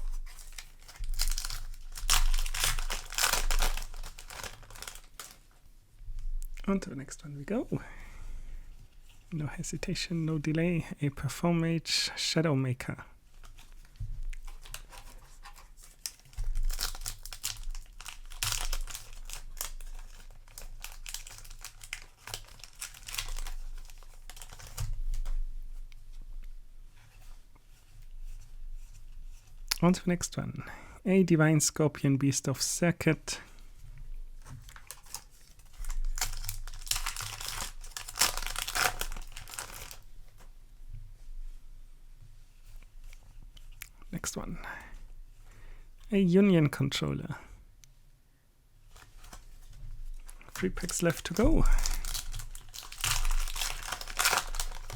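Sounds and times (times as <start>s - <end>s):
foil wrapper crinkling: 0.0s - 5.6s, 13.3s - 25.4s, 34.4s - 40.4s, 48.9s - 54.9s.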